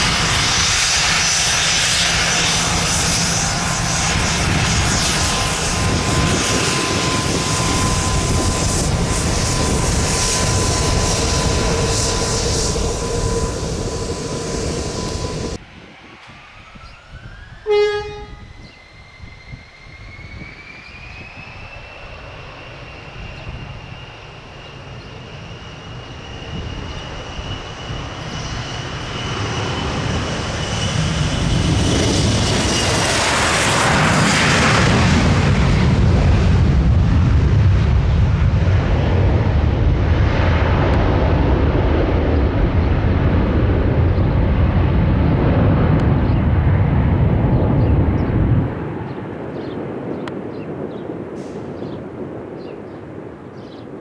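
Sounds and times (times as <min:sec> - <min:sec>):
jet engines spooling up: 0:00.0 - 0:49.2
jet taking off: 0:00.0 - 0:54.0
brief sharp tone: 0:17.6 - 0:19.3.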